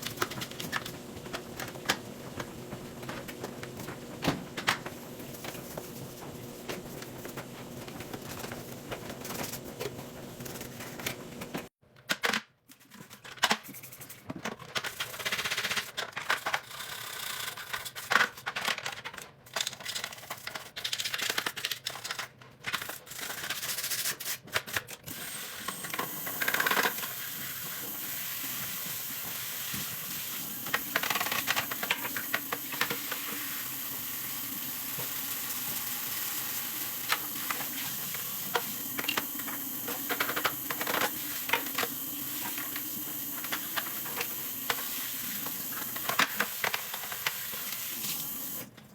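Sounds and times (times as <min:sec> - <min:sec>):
scrubbing washing machine by hand: 0:00.0 - 0:11.7, 0:25.7 - 0:48.7.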